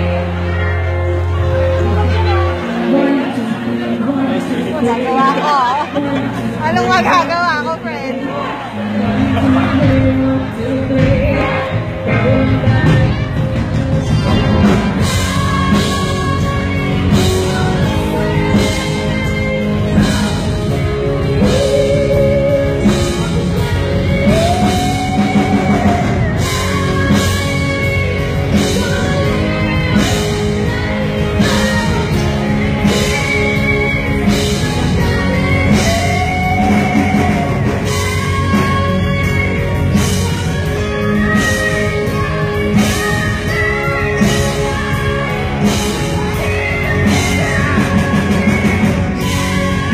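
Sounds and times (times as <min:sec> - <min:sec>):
rock band playing: 0:00.0 - 0:49.9.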